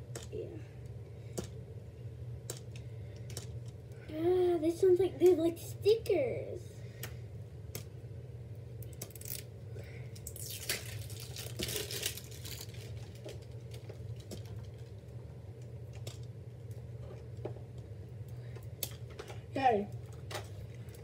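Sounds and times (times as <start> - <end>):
steady low hum: 0.0 - 21.0
plastic wrapping crinkling: 10.2 - 15.0.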